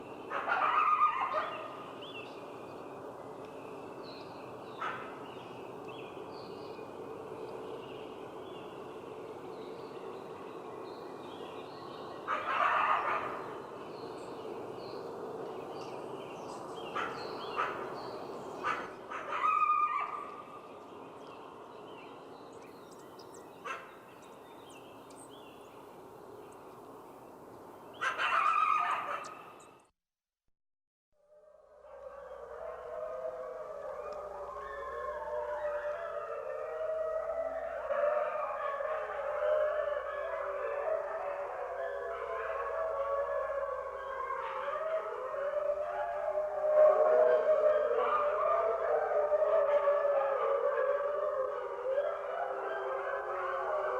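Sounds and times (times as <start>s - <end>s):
steady background hiss: 0.0s - 19.2s
wolves yelping and yipping: 0.3s - 1.7s, 12.3s - 13.4s, 18.6s - 20.4s, 28.0s - 29.4s.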